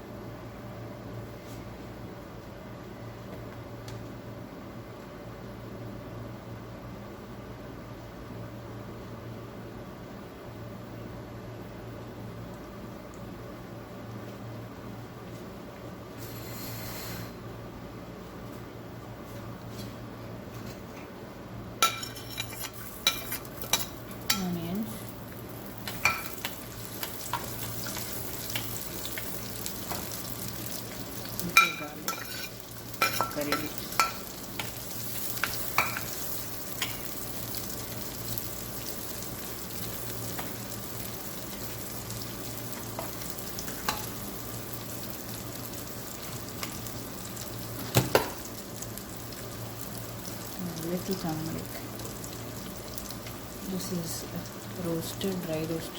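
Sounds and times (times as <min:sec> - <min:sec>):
oil frying hiss: 0:21.8 - 0:55.9.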